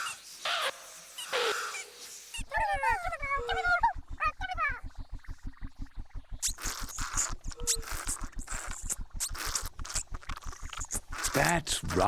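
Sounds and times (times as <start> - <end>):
soft hissing: 6.4 - 12.0.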